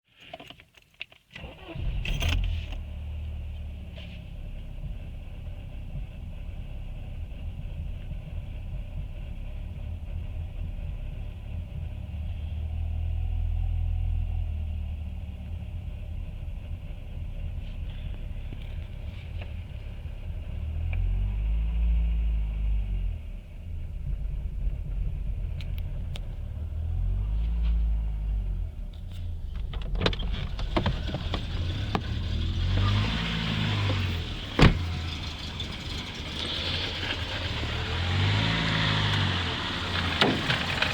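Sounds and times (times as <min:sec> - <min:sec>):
car engine idling roughly: 0:01.5 - 0:21.2, 0:23.2 - 0:38.4, 0:39.6 - 0:40.9.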